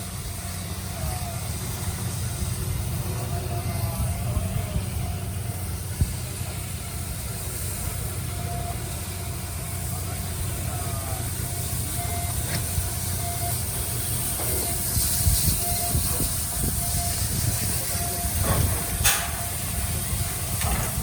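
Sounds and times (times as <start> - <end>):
low engine rumble: 0.0 - 21.0.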